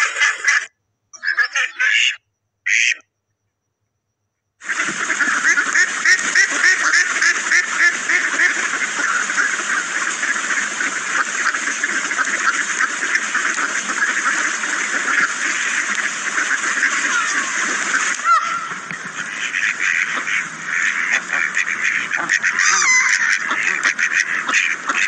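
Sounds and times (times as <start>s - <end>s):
flock of ducks quacking: 0.0s - 3.0s, 4.6s - 25.0s.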